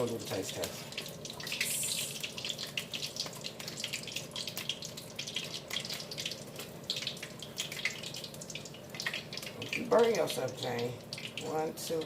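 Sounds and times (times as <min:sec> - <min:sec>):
food sizzling in hot oil: 0:00.0 - 0:12.0.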